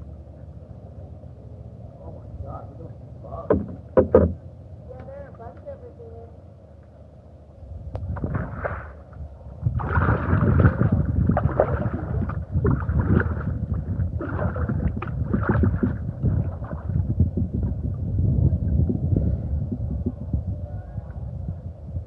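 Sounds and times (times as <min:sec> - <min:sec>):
steady low rumble: 0:00.0 - 0:22.0
paddle splashing in water: 0:08.0 - 0:17.8.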